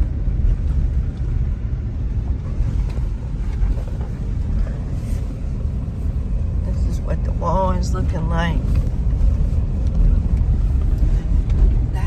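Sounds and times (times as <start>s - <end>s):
car cabin rumble: 0.0s - 12.0s.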